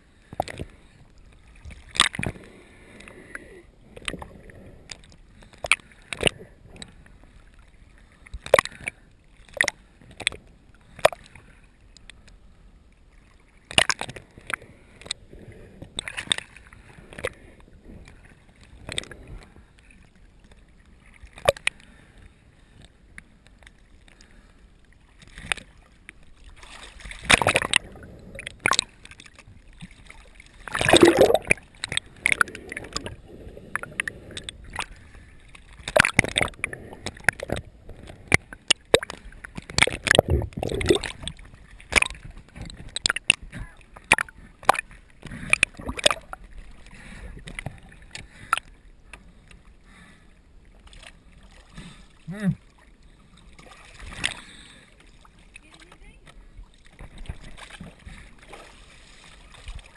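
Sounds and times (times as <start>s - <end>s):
rush of water: 0.0s - 11.4s, 25.0s - 48.7s, 50.8s - 59.9s
water sloshing and gurgling: 0.0s - 59.9s
sharp water splashes: 1.7s - 2.4s, 13.6s - 14.6s, 26.4s - 37.6s, 38.3s - 43.4s, 45.5s - 46.5s, 57.0s - 59.9s.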